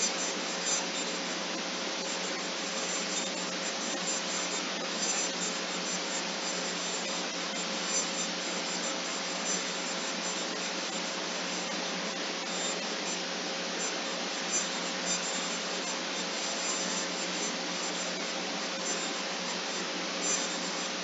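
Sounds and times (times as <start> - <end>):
steady hiss: 0.0 - 21.0.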